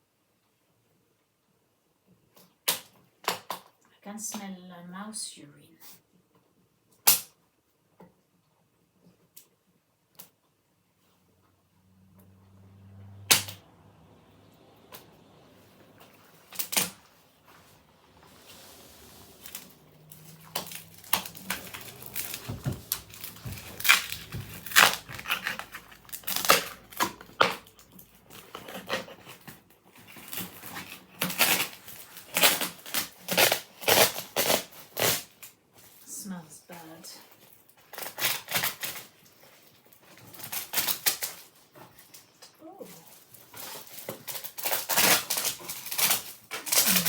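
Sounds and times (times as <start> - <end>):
fabric and stuffing tearing: 16.0 - 35.5, 42.8 - 47.0.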